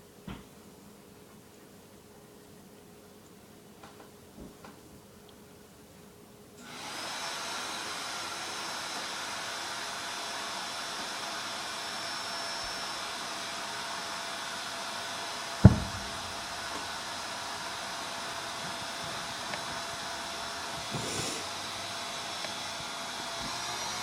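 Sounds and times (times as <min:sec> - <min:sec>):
whirring motor hiss: 0:06.6 - 0:24.0
sharp knock: 0:15.6 - 0:17.0.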